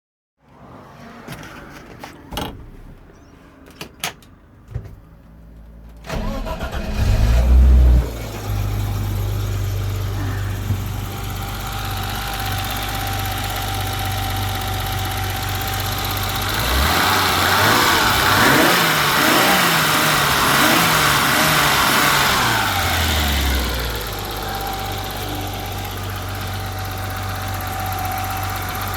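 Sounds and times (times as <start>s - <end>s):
engine cranking and starting: 6.0s - 8.8s
engine revving: 6.1s - 12.6s, 15.2s - 28.9s
engine idling: 8.2s - 28.9s.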